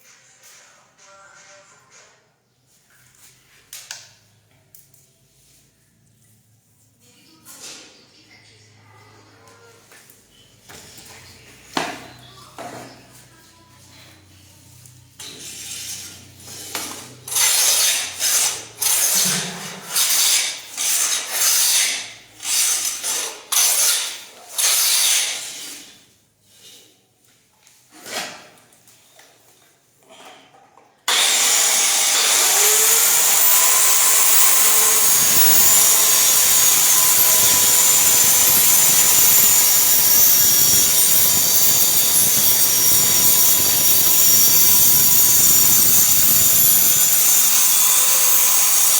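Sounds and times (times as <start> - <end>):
hand sawing wood: 15.3 - 25.9, 31.1 - 48.9
woodworking power tool whining: 31.1 - 48.9.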